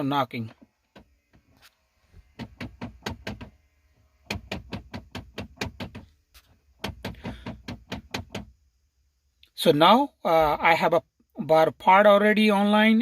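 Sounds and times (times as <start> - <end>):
actuator rapid knocking: 6.8 - 8.5.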